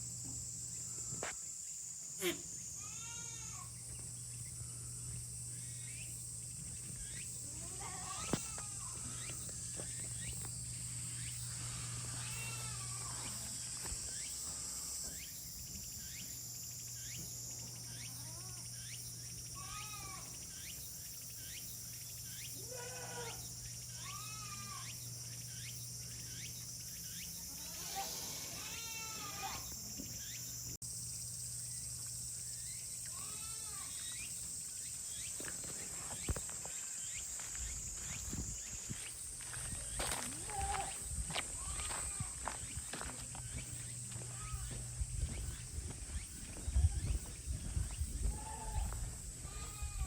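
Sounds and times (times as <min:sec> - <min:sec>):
insects droning: 0:00.0 - 0:50.0
goat kids bleating: 0:02.2 - 0:03.7, 0:07.5 - 0:09.4, 0:12.0 - 0:13.6, 0:19.6 - 0:20.3, 0:22.6 - 0:25.0, 0:27.5 - 0:29.8, 0:33.1 - 0:34.0, 0:40.0 - 0:42.6, 0:44.1 - 0:44.9, 0:48.2 - 0:50.0.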